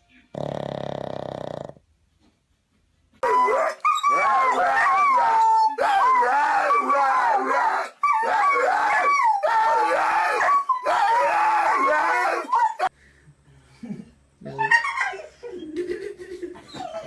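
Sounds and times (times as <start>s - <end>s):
dog howling: 3.2s - 12.9s.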